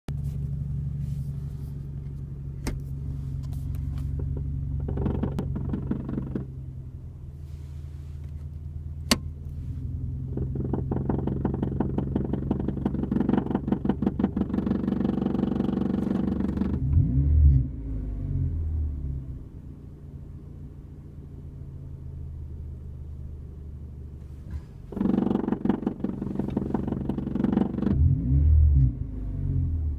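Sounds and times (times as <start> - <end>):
car engine revving: 0.5 - 8.0, 8.9 - 19.4, 24.3 - 29.9.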